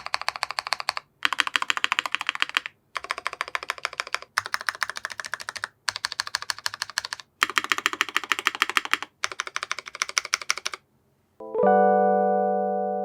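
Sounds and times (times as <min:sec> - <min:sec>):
mechanical keyboard typing: 0:00.0 - 0:10.8
sustained piano chord: 0:11.4 - 0:13.0.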